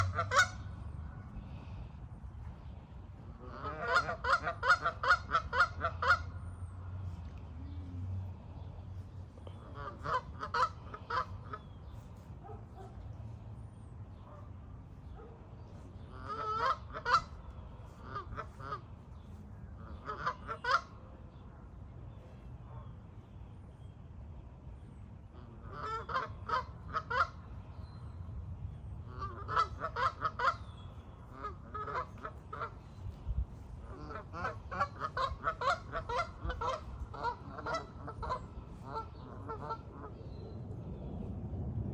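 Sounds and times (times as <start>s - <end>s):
geese honking: 0.0s - 0.9s, 3.2s - 6.6s, 9.6s - 12.6s, 16.0s - 21.0s, 25.4s - 27.5s, 29.1s - 40.2s.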